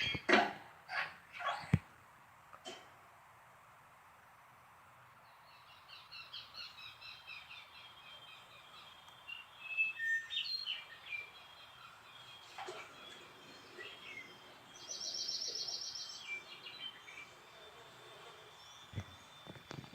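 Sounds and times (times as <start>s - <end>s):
reversed bird chirps: 5.3s - 19.9s.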